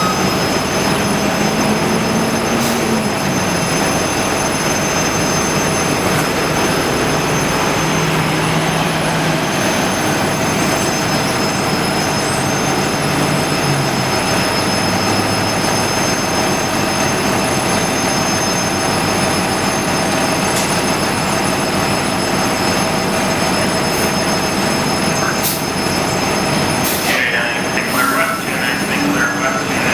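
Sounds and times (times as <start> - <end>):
lower hum stepping down: 0.0 - 10.0
high-pitched whine: 0.0 - 20.4
bus running: 0.0 - 29.9.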